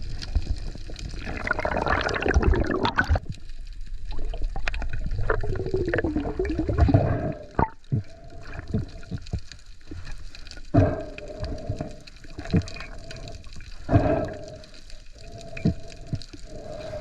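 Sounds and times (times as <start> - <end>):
water gurgling and sloshing: 0.0 - 17.0.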